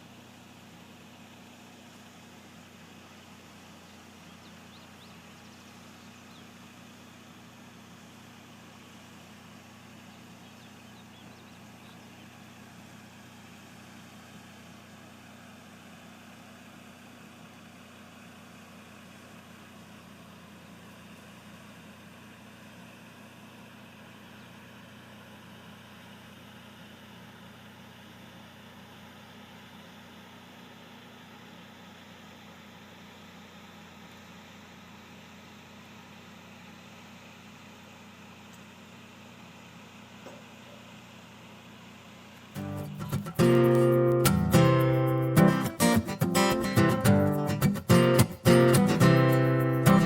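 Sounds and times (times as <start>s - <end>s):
low mechanical hum: 0.0s - 50.0s
even hiss: 42.6s - 50.0s.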